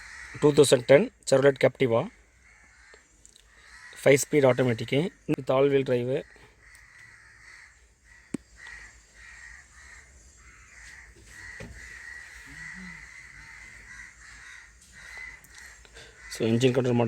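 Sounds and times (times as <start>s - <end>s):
faint high bird calls: 6.2s - 17.0s.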